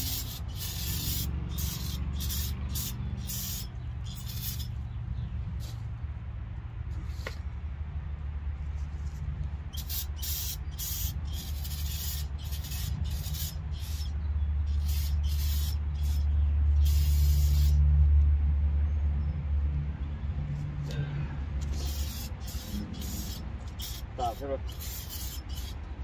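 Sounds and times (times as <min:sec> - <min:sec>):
spray hissing in short bursts: 0:00.0 - 0:04.7, 0:09.8 - 0:14.1, 0:14.7 - 0:16.2, 0:16.8 - 0:17.8, 0:21.6 - 0:25.8
steady low hum: 0:00.0 - 0:26.0.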